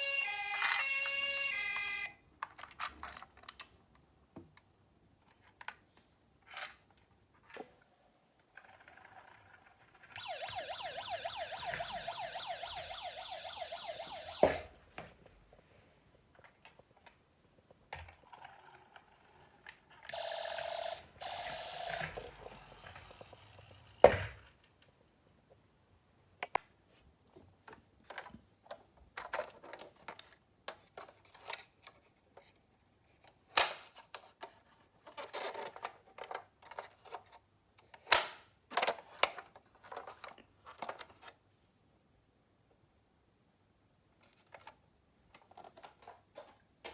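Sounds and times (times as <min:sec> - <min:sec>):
toy siren wavering: 0:00.0 - 0:02.2, 0:10.2 - 0:14.7, 0:20.1 - 0:23.6
plastic toy cars clattering: 0:00.3 - 0:03.8, 0:06.4 - 0:10.2, 0:28.0 - 0:32.5, 0:33.3 - 0:41.4, 0:44.3 - 0:46.9.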